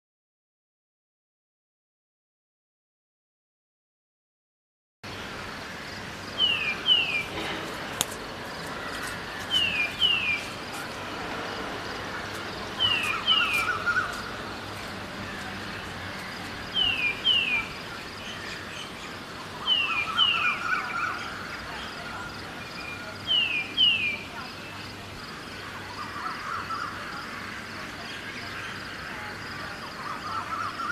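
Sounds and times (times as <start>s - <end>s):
city ambience: 5.0s - 30.9s
bird chatter: 6.4s - 30.9s.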